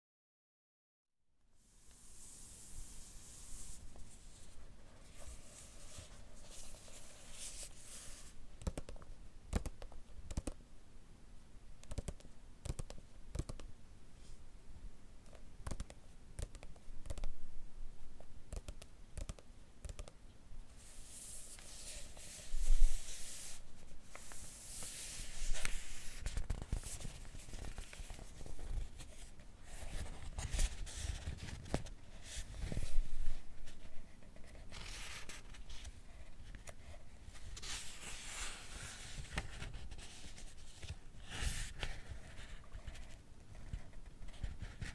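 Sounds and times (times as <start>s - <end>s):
book pages turning: 21.1s - 29.2s, 37.4s - 43.1s.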